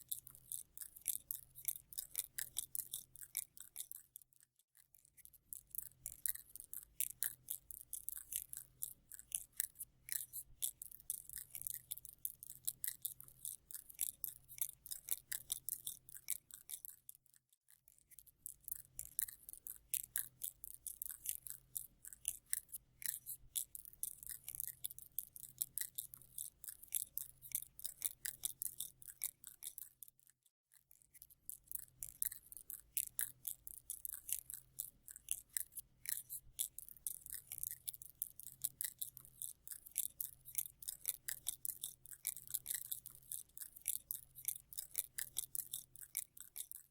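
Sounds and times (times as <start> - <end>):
dry high-pitched clicking: 31.1 - 46.9.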